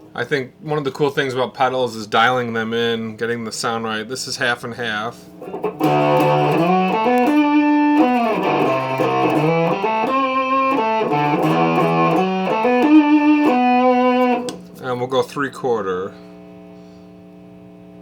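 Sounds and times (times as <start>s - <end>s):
fuzz electric guitar riff: 5.3s - 15.2s.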